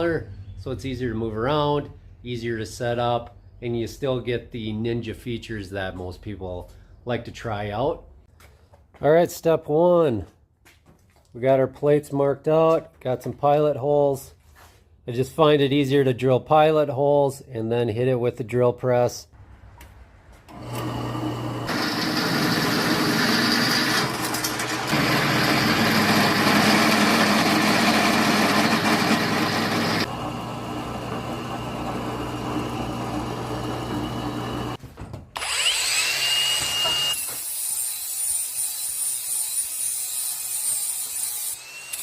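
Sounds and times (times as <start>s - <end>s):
drill press motor hum: 20.5s - 34.8s, 35.4s - 37.2s
drill bit cutting steel: 20.6s - 34.8s, 35.4s - 42.0s
power tool high whine: 20.6s - 34.8s, 35.4s - 37.5s, 41.3s - 42.0s.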